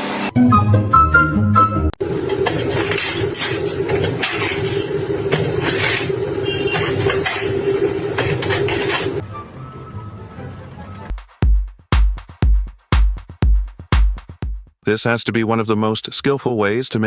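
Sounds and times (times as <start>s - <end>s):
heavy machine humming: 2.0s - 11.1s.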